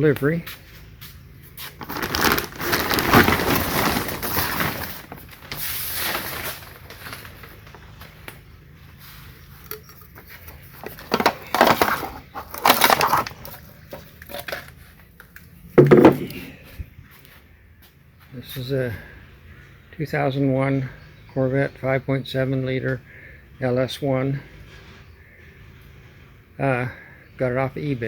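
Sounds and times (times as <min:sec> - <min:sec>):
packaging crinkling and tearing: 0:01.6 - 0:07.8, 0:11.2 - 0:14.5
dull knock: 0:15.8 - 0:16.3.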